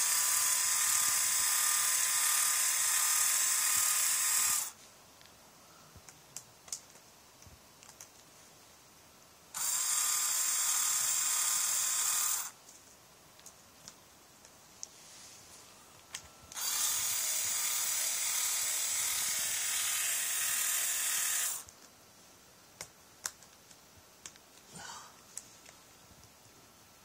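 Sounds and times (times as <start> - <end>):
electric screwdriver running: 0.0 - 4.8, 9.6 - 12.6, 16.5 - 21.7.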